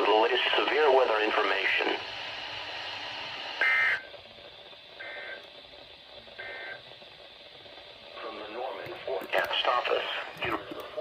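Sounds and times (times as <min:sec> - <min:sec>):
radio hiss: 0:00.0 - 0:04.1, 0:07.5 - 0:11.0.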